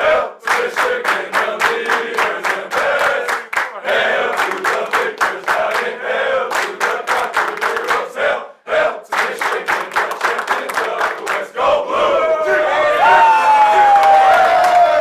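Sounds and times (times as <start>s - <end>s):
group singing and shouting a chant: 0.0s - 13.4s
fast rhythmic clapping: 0.4s - 8.2s, 9.1s - 11.6s.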